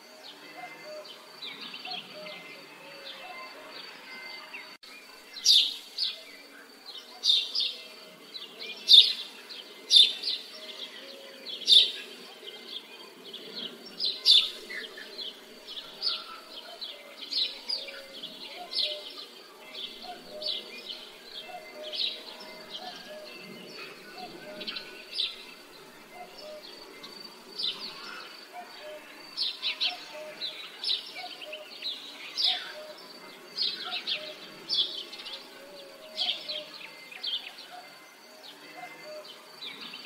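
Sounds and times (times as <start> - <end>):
birds chirping: 0.0 - 40.0.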